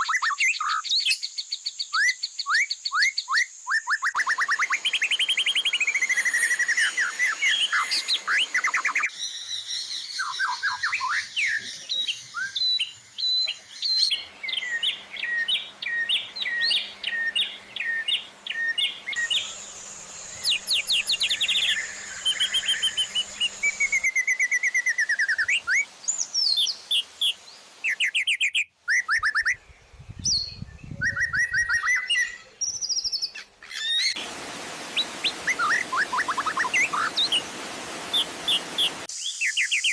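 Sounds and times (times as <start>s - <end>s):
songbird chirps and whistles: 0.0s - 39.9s.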